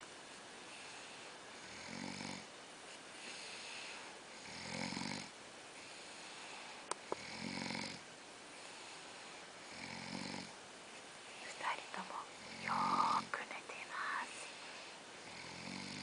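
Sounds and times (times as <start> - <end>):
soft breathing: 0.2 - 2.2, 2.8 - 4.6, 5.7 - 7.4, 8.5 - 9.7, 10.8 - 16.0
person snoring: 1.6 - 2.5, 3.4 - 5.3, 7.2 - 8.0, 9.6 - 10.6, 11.9 - 14.6, 15.2 - 16.0.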